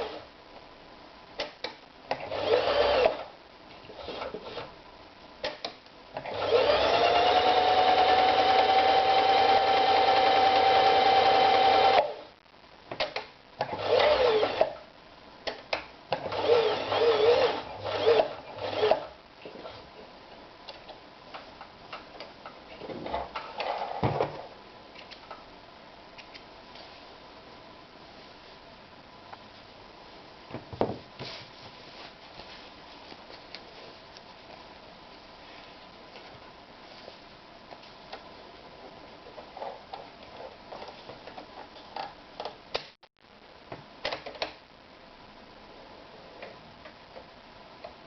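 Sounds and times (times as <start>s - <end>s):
knock: 30.5s - 31.0s
fabric rustling: 31.0s - 36.0s.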